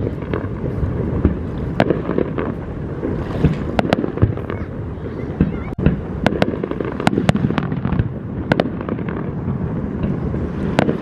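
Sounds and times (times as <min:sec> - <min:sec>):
fireworks bangs and cracks: 0:00.0 - 0:11.0
wind buffeting microphone: 0:00.0 - 0:11.0.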